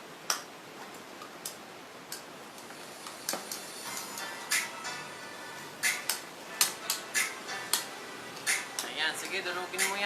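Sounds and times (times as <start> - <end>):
faint background music: 2.5 - 10.0.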